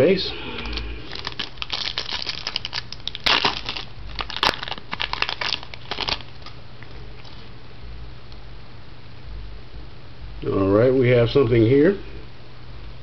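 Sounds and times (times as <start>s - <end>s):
foil wrapper crunches: 0.6s - 7.4s
foil wrapper crinkling: 0.6s - 7.5s.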